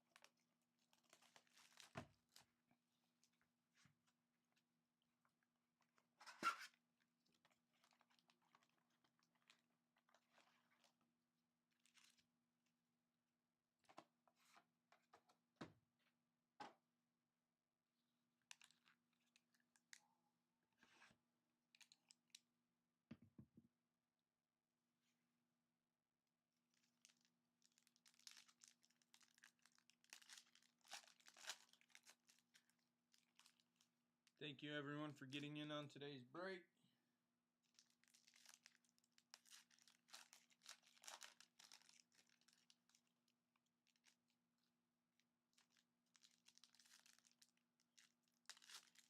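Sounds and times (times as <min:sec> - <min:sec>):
wrapper crinkling and tearing: 0:00.1 - 0:02.5, 0:26.7 - 0:33.9, 0:37.7 - 0:43.1, 0:45.5 - 0:49.0.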